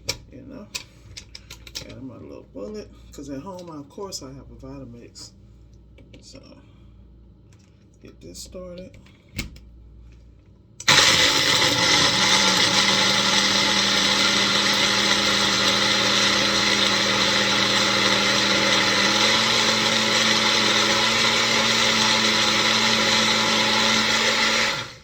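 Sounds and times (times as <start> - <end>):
blender blending ice: 10.8 - 25.0.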